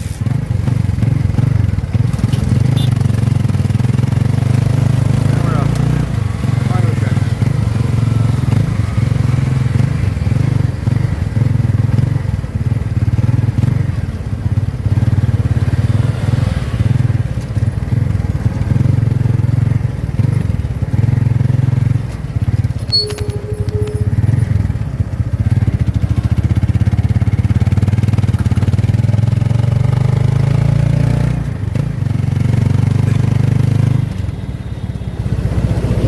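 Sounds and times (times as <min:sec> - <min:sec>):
motorcycle engine running: 0:00.0 - 0:36.0
clicks: 0:22.1 - 0:24.7
short steady tone: 0:22.8 - 0:24.9.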